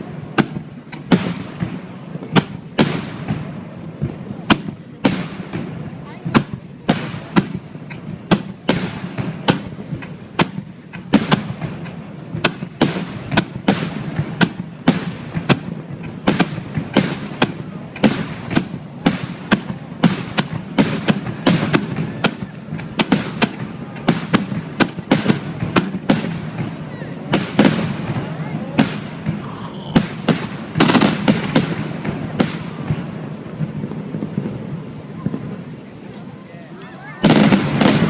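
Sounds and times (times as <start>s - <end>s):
firework bangs: 0.0s - 38.0s.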